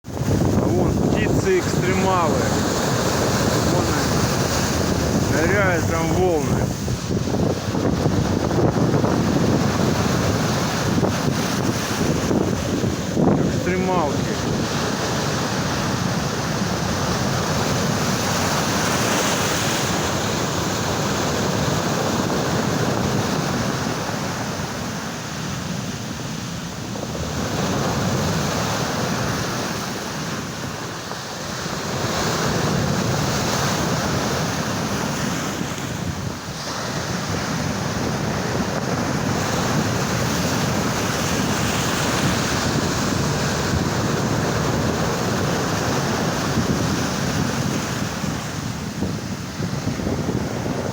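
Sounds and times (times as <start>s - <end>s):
sea waves breaking: 0.0s - 50.9s
wind buffeting microphone: 0.0s - 50.9s.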